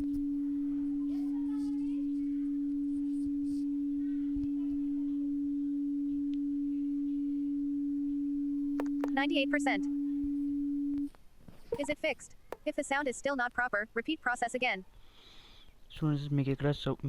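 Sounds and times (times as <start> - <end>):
phone speaker low pure tone: 0.0 - 11.1.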